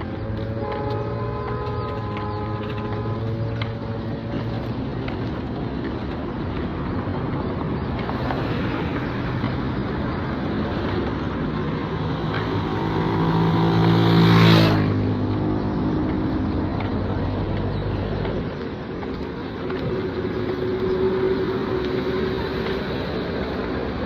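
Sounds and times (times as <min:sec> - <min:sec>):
steady traffic noise: 0:00.0 - 0:24.0
vehicle driving past: 0:11.8 - 0:16.7.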